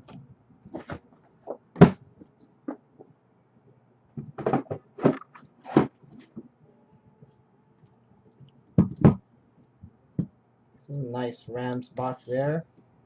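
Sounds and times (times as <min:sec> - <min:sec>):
cards and packaging knocking: 0:04.2 - 0:06.4, 0:08.8 - 0:09.2.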